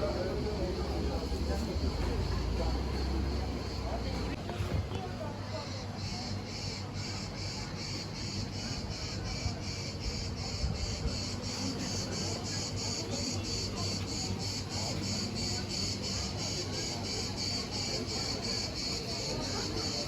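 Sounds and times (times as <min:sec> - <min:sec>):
insects chirring: 0:06.0 - 0:20.0.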